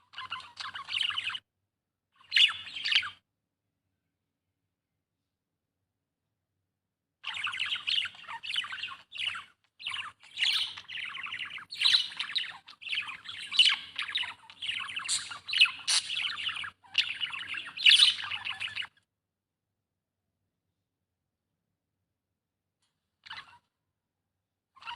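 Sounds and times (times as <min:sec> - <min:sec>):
budgerigar chirping and chattering: 0:00.1 - 0:01.4, 0:02.2 - 0:03.2, 0:07.2 - 0:19.0.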